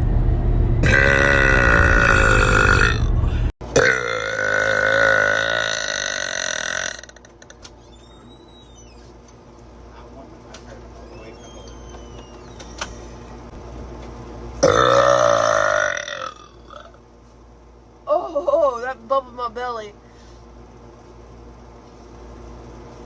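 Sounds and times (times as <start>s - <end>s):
woman burping loudly: 0.8s - 3.1s, 3.7s - 7.6s, 14.6s - 17.0s.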